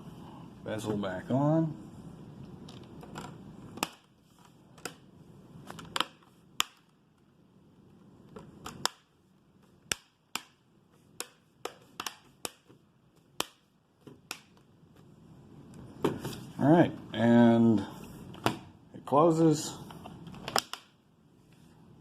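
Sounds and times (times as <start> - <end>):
plastic clips snapping into place: 20.3 - 20.9.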